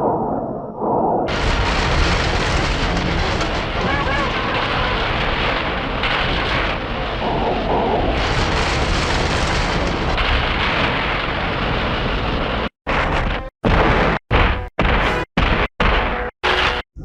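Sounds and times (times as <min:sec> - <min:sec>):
rumbling explosions: 0:00.0 - 0:17.0.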